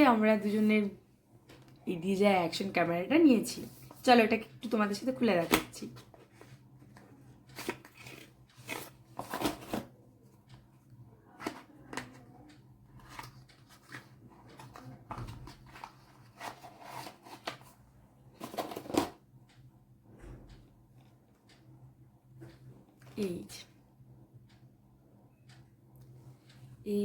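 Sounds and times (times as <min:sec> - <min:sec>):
cardboard and plastic packaging rustling: 0:07.5 - 0:09.9, 0:13.0 - 0:17.8, 0:18.4 - 0:19.2.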